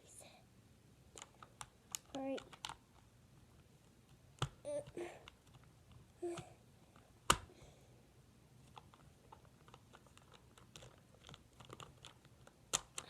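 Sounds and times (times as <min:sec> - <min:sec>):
plastic toy clicks and taps: 0:01.2 - 0:02.8.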